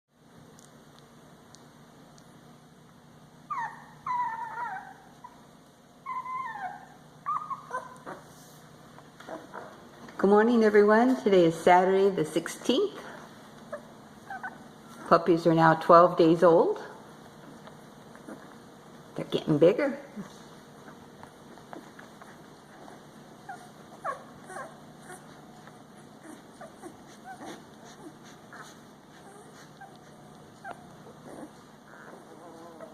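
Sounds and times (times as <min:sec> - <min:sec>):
puppies whimpering: 0:03.4 - 0:08.6, 0:13.6 - 0:15.2, 0:17.4 - 0:18.8, 0:20.7 - 0:32.9.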